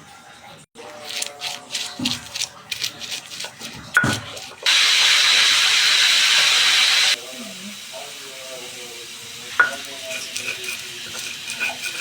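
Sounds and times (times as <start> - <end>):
kitchen utensils clicking and scraping: 0.8 - 4.9, 9.4 - 12.0
food sizzling in hot oil: 4.6 - 12.0.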